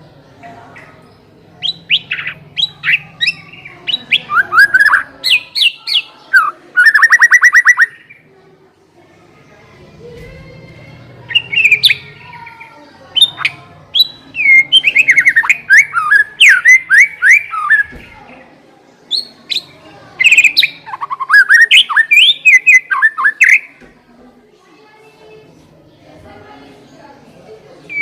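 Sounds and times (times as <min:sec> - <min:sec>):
bird singing whistled notes: 0:01.6 - 0:08.2, 0:13.2 - 0:17.9, 0:20.2 - 0:23.7.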